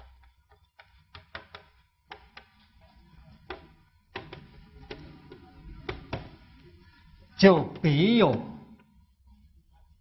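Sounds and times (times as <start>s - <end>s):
faint clicks and taps: 0.0s - 6.7s.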